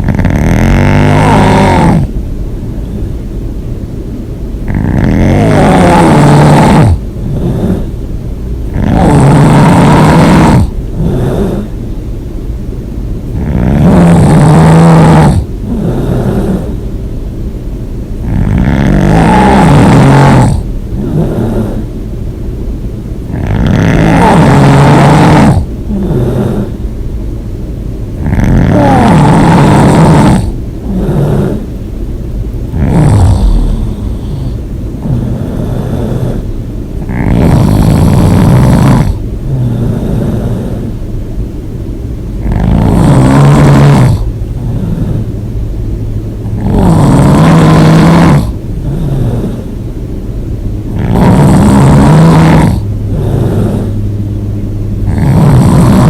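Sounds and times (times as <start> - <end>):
person snoring loudly: 0.0 - 2.2, 4.6 - 7.9, 8.7 - 11.8, 13.3 - 16.8, 18.2 - 21.9, 23.3 - 26.8, 28.2 - 31.7, 32.7 - 40.9, 42.4 - 45.3, 46.4 - 49.7, 50.9 - 54.0, 55.0 - 56.0.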